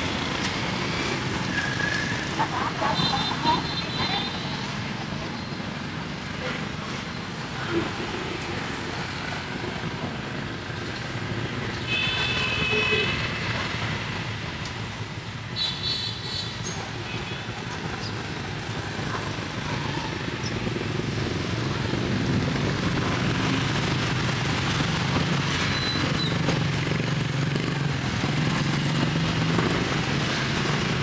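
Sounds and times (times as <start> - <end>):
street traffic noise: 0.0 - 31.0.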